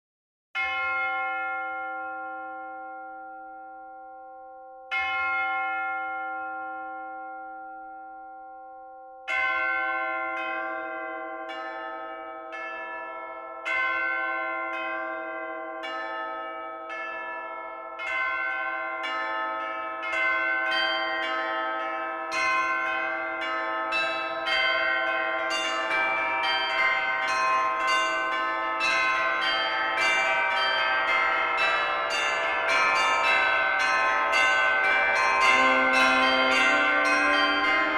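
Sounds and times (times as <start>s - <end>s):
church bell ringing: 0.6s - 37.9s
second bell of different pitch: 35.1s - 37.9s.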